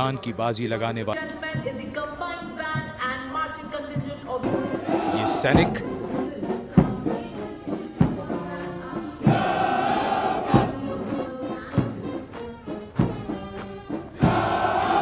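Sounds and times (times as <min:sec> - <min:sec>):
military marching music: 0:01.6 - 0:15.0
deep drum beats: 0:04.0 - 0:15.0.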